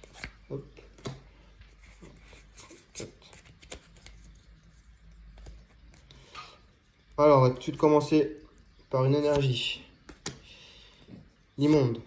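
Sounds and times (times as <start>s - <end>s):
cards rustling and tapping: 0.0s - 6.1s, 9.2s - 10.4s.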